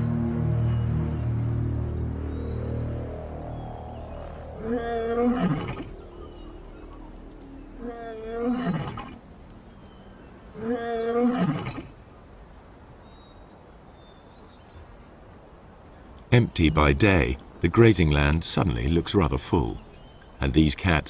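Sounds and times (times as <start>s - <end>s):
insects chirping: 0.0s - 21.0s
lion roaring: 3.9s - 9.2s.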